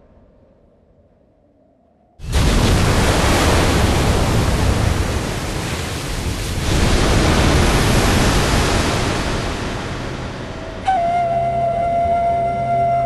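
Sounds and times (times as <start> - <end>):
loud steady rushing noise: 2.3 - 11.0.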